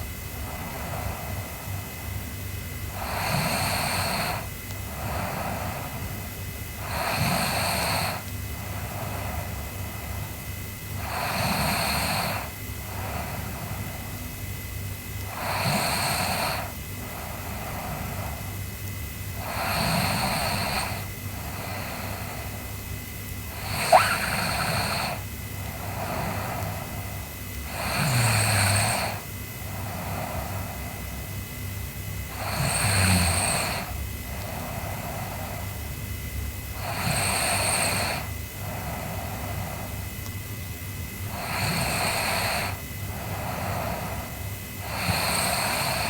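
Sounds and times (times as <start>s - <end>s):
soft breaths: 0.0s - 31.7s, 32.3s - 40.4s, 41.2s - 46.0s
girl snoring: 2.9s - 6.2s, 6.8s - 10.3s, 11.0s - 14.1s, 15.2s - 18.5s, 19.3s - 22.8s, 23.4s - 31.0s, 32.3s - 35.9s, 36.7s - 40.1s, 41.2s - 46.0s.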